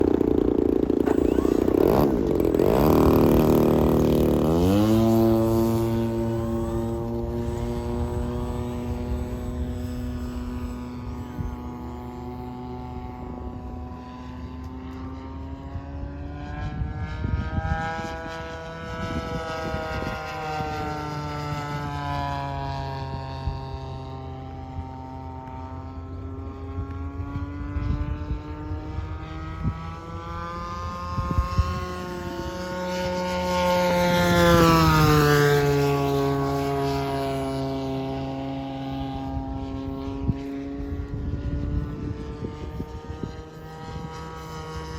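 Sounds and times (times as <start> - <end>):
model airplane engine flying: 0.0 - 44.9.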